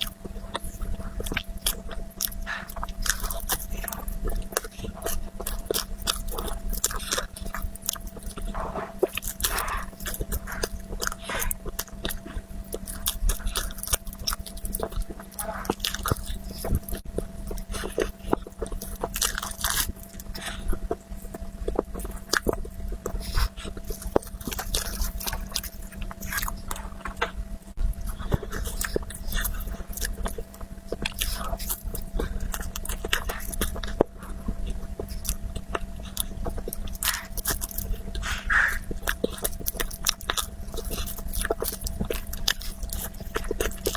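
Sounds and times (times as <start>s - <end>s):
person chewing dessert: 0.0s - 43.9s.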